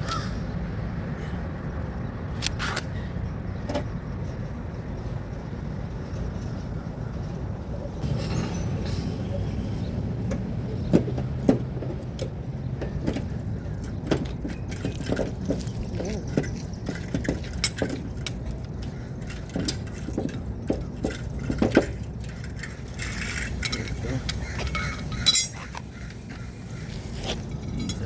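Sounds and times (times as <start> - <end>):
metallic clinks of hand tools: 19.2 - 25.8.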